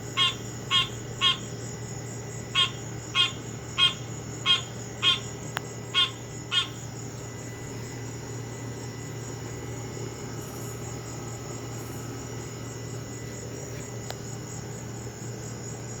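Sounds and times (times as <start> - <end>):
animal honking calls: 0.2 - 1.5, 2.5 - 5.3, 5.9 - 6.8.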